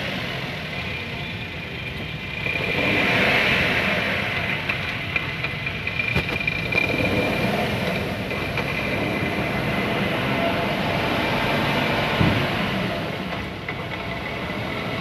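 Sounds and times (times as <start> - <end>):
car road and drivetrain noise: 0.0 - 15.0
clattering grind of worn bearing: 3.7 - 10.6.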